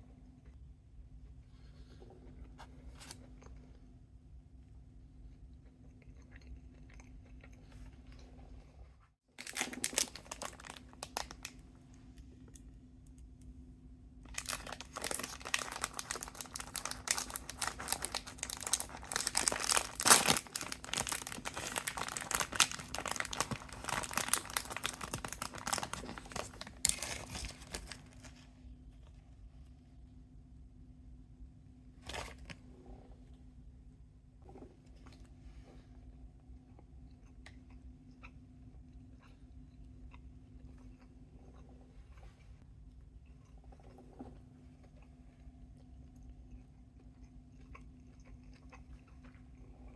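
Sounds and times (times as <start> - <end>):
plastic packaging crinkling: 9.4 - 11.6, 14.3 - 28.4.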